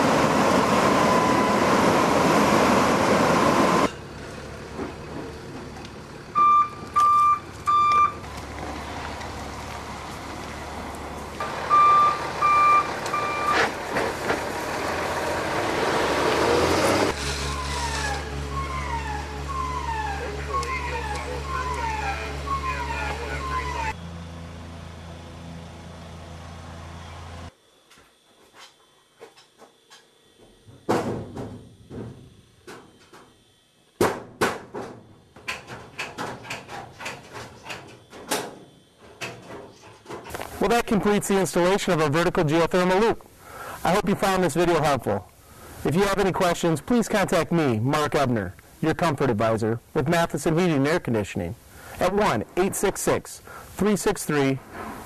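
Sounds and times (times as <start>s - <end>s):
rising rush of machine noise: 0.0s - 3.9s
diesel engine running: 0.0s - 27.5s
backup alarm beeping: 1.0s - 1.8s, 6.3s - 8.3s, 11.5s - 13.7s, 17.5s - 24.0s.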